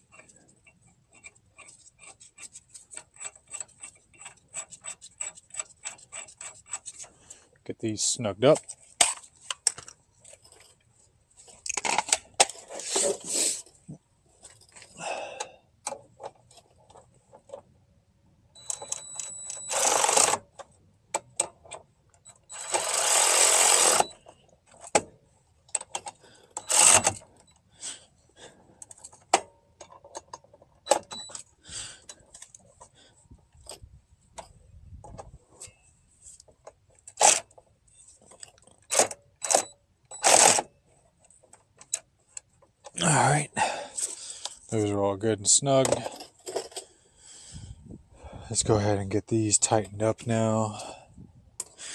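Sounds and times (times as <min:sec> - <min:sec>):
metal clicks and clanks: 0:00.0 - 0:07.1, 0:11.5 - 0:13.2, 0:18.6 - 0:27.6, 0:28.8 - 0:32.9, 0:38.2 - 0:43.0, 0:45.7 - 0:46.9
ratchet rasping bursts: 0:01.1 - 0:07.0, 0:18.7 - 0:20.4, 0:22.3 - 0:24.2, 0:26.6 - 0:27.2, 0:38.9 - 0:40.7.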